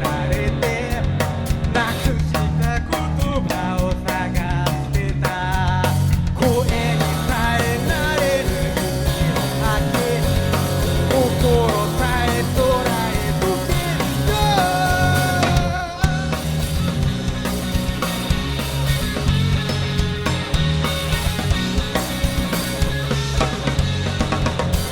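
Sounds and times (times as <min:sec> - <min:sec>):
rock band playing live: 0:00.0 - 0:24.9
bending lead melody: 0:06.4 - 0:24.9.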